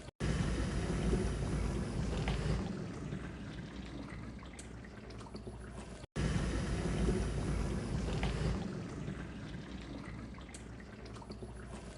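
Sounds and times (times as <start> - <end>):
dishwasher water spraying: 0.0 - 4.4, 6.2 - 9.8.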